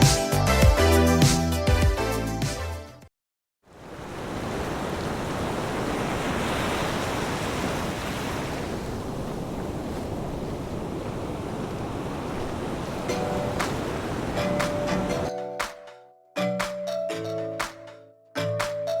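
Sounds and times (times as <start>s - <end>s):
ocean surf washing ashore: 3.7s - 15.8s
bell-like mallet music: 13.1s - 19.0s.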